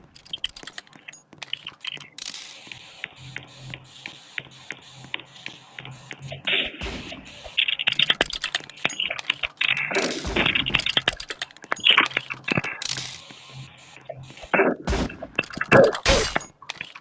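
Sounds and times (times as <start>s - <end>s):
sharp clicks and cracks: 0.0s - 2.6s, 7.4s - 13.3s, 14.5s - 17.0s.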